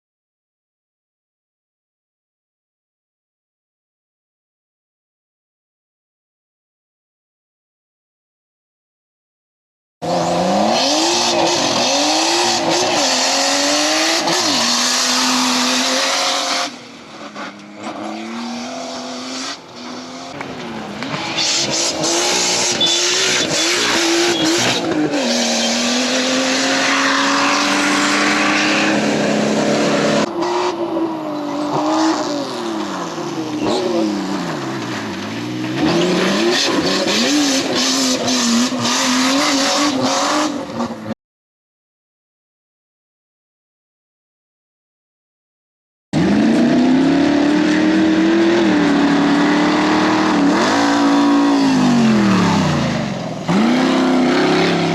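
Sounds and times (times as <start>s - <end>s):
race car engines revving: 10.0s - 41.2s, 46.2s - 54.9s.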